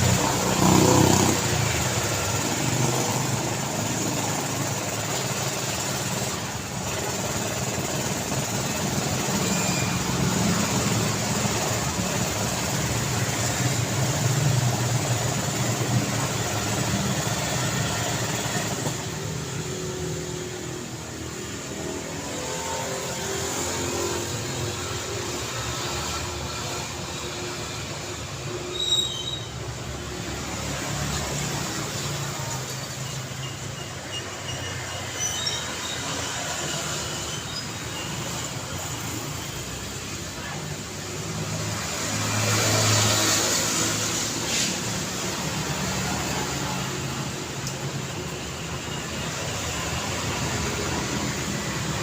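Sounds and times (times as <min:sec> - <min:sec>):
street traffic passing: 0:00.0 - 0:52.0
high-pitched squeal: 0:09.0 - 0:11.2, 0:28.6 - 0:29.7.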